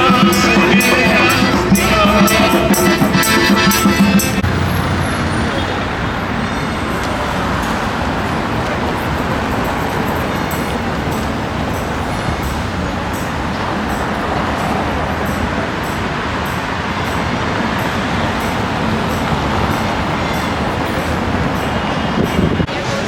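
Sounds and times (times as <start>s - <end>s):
music with steady beat: 0.0s - 4.4s
city street traffic: 0.0s - 23.0s.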